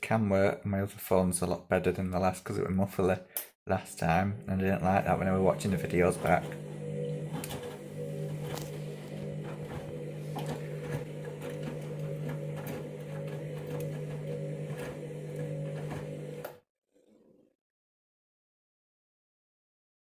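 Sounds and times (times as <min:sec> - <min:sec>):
washing machine motor hum: 0:04.2 - 0:16.6.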